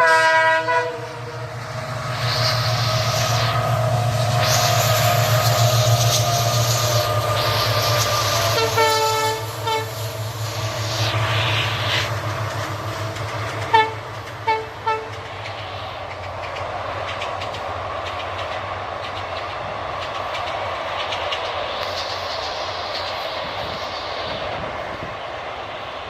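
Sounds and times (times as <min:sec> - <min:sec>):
locomotive horn blasts: 0:00.0 - 0:01.3, 0:08.5 - 0:10.0, 0:13.7 - 0:15.2
train coaches rumbling: 0:00.0 - 0:26.0
diesel engine drone: 0:00.7 - 0:21.0
wheels clicking over rail joints: 0:12.0 - 0:25.3.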